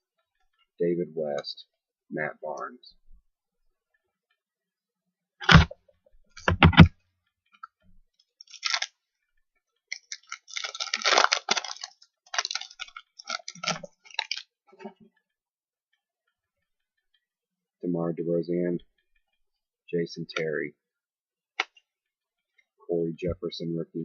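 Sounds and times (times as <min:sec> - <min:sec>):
foil wrapper tearing and crinkling: 0:08.4 - 0:09.0, 0:09.9 - 0:14.5.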